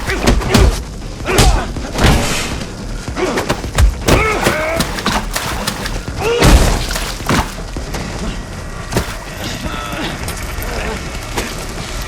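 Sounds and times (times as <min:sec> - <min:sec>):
punch thuds: 0:03.5 - 0:07.7, 0:08.9 - 0:09.4.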